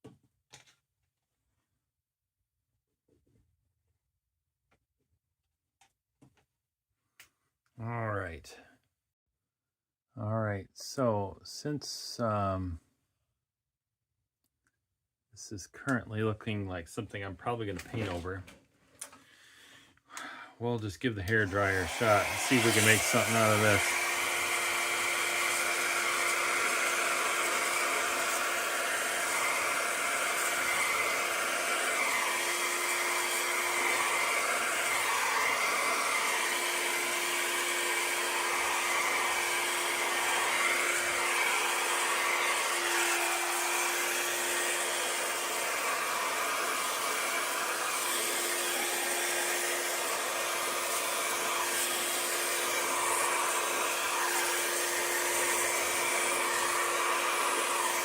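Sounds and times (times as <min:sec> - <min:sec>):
hair dryer blowing: 0:21.2 - 0:58.0.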